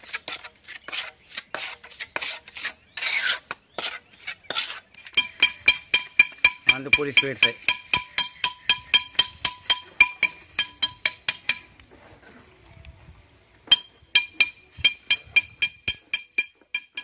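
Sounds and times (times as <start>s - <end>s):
steel tools clinking on metal: 5.1s - 11.7s.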